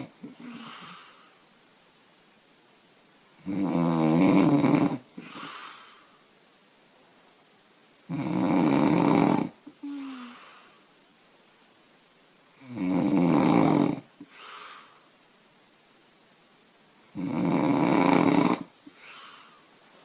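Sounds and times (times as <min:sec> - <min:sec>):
woman snoring loudly: 0:00.0 - 0:01.2, 0:03.4 - 0:05.6, 0:08.1 - 0:10.7, 0:12.6 - 0:14.8, 0:17.1 - 0:19.5
soft breath: 0:00.2 - 0:01.5, 0:05.2 - 0:06.3, 0:09.8 - 0:11.0, 0:14.2 - 0:15.2, 0:18.8 - 0:20.0.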